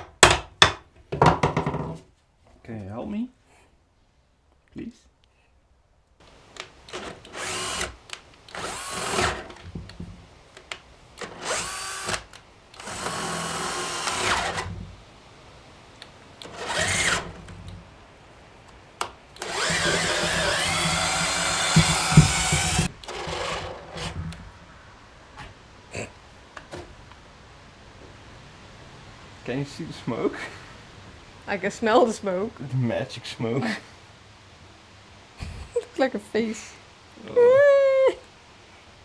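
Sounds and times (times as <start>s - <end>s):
cordless drill bursts: 6.2s - 9.9s, 11.1s - 15.0s, 16.4s - 17.9s, 19.4s - 24.5s.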